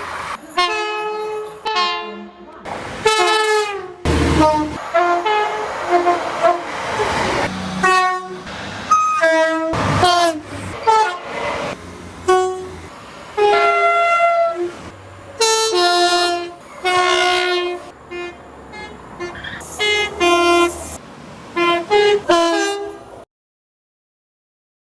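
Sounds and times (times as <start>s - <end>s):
rumble of trains: 0.0s - 23.3s
train horn toots: 0.5s - 11.3s, 12.2s - 21.0s, 21.6s - 23.2s.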